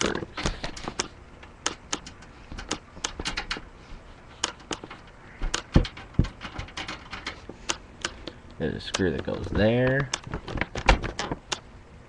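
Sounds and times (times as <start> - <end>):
heavier knocks: 5.4 - 6.8.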